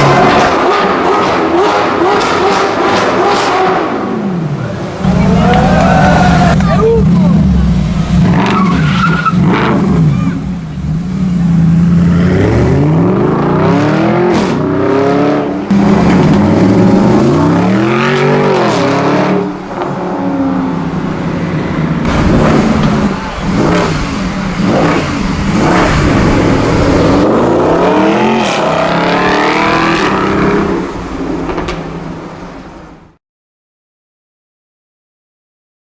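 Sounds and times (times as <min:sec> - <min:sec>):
sports car engine revving: 0:05.0 - 0:32.5
exhaust crackles and pops: 0:22.0 - 0:27.5, 0:31.2 - 0:32.8.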